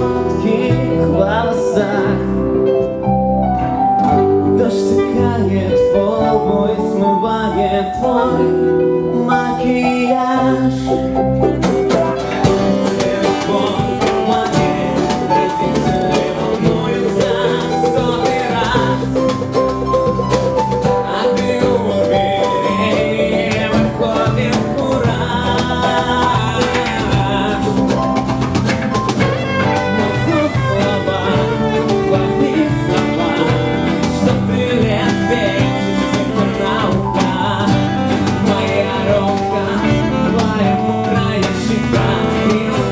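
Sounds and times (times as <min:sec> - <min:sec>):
drum kit: 0:00.0 - 0:01.3, 0:11.2 - 0:42.9
band playing live: 0:00.0 - 0:42.9.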